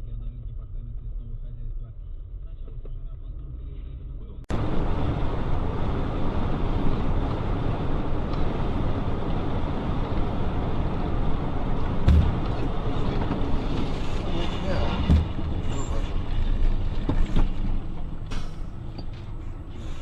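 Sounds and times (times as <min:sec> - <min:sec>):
traffic and driving noise: 0:00.0 - 0:20.0
heavy thump: 0:12.0 - 0:13.5, 0:14.9 - 0:15.8.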